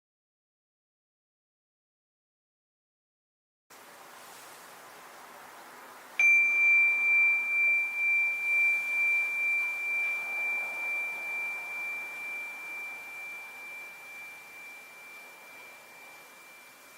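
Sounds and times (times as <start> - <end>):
bowl bell ringing: 6.2 - 16.9.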